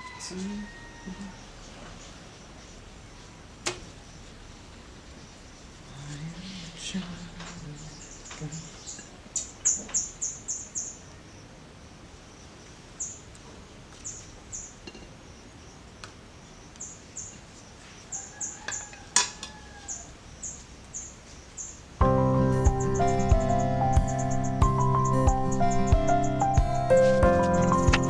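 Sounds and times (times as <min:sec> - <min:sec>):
background hiss: 0:00.0 - 0:18.6, 0:19.2 - 0:28.0
music: 0:22.0 - 0:28.0.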